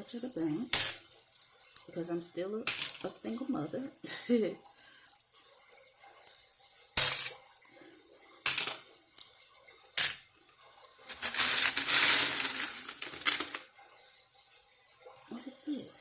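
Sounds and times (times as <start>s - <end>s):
coins clattering: 0.2s - 2.0s, 2.6s - 10.2s, 11.1s - 13.7s.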